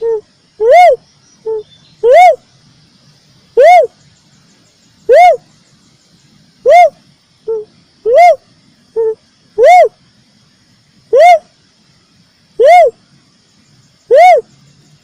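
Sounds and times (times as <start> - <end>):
cuckoo-dove hooting call: 0.0 - 2.4, 3.6 - 4.0, 5.0 - 5.5, 6.6 - 10.0, 11.1 - 11.5, 12.6 - 13.0, 14.0 - 14.6.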